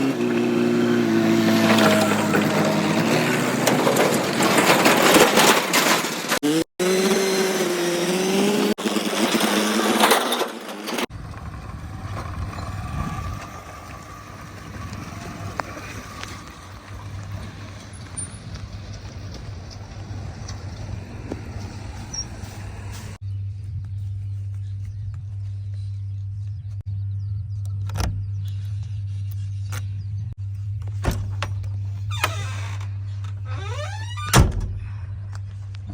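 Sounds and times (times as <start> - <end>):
heavy machinery diesel engines: 0.0 - 23.2.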